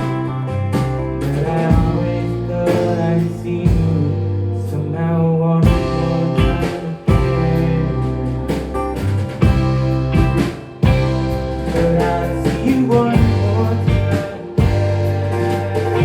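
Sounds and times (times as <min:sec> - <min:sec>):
guitar: 0:00.0 - 0:16.0
steady bass line: 0:00.0 - 0:16.0
drum hits: 0:05.6 - 0:07.7, 0:08.3 - 0:16.0.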